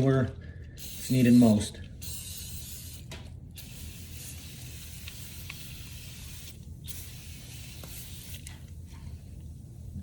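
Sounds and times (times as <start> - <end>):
aerosol can spraying: 0.8 - 8.7.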